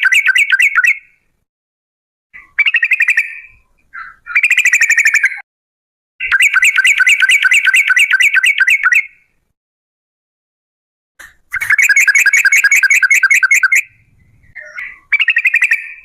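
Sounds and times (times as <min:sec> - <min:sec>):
bulbul song: 0:06.2 - 0:09.4, 0:11.2 - 0:16.0.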